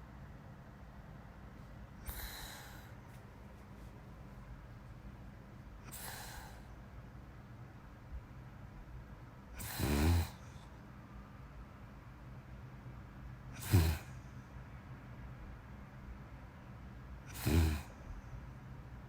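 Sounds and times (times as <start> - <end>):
faint low hum: 0.0 - 19.0
soft breath: 1.5 - 4.1, 5.8 - 6.9
person snoring: 2.1 - 3.0, 9.6 - 10.7, 13.6 - 14.2, 17.3 - 18.0.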